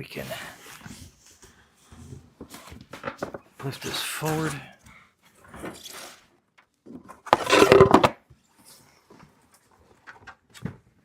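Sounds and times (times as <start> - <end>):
wooden parts clattering: 3.0 - 3.5, 6.9 - 8.2
wood scraping: 6.9 - 8.2.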